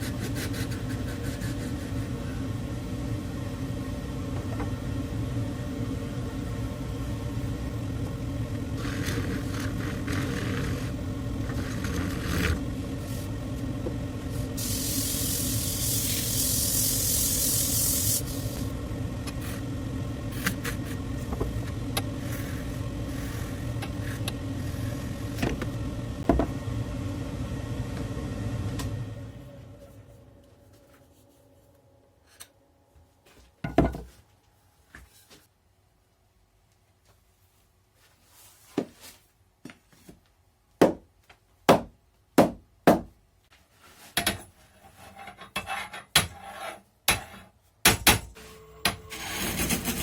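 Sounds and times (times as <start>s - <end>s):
lathe motor humming: 6.4s - 29.8s
hissing lathe cut: 14.6s - 18.7s.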